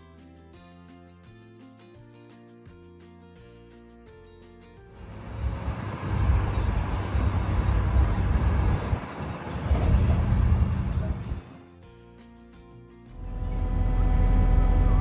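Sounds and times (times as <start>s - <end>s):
soft background music: 0.0s - 15.0s
vehicle engine rumbling: 5.0s - 11.6s, 13.2s - 15.0s.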